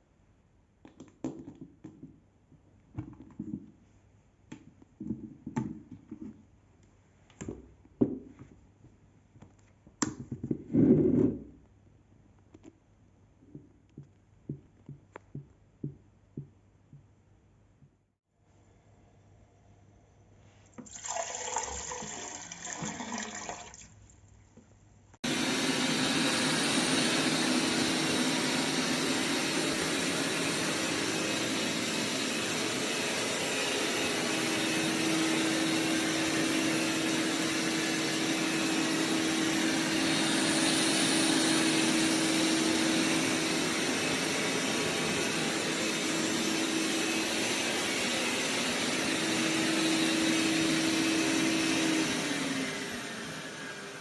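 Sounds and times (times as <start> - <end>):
robot vacuum rushing and humming: 25.2 - 54.0.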